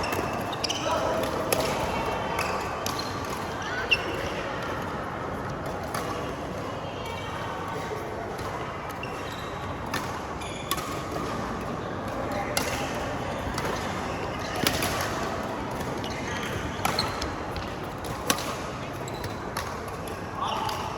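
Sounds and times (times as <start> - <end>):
rackets hitting shuttlecock: 0.0 - 3.5, 9.9 - 20.9
background chatter: 0.0 - 10.4.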